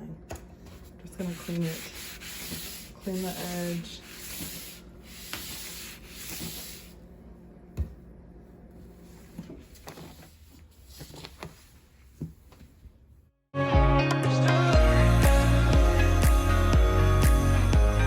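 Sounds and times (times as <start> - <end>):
scratchy rubbing on a surface: 1.2 - 6.9.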